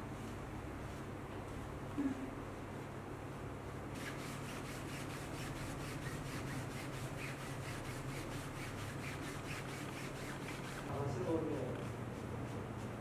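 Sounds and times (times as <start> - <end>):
steady low hum: 0.0 - 13.0
hands rubbing: 4.0 - 10.9.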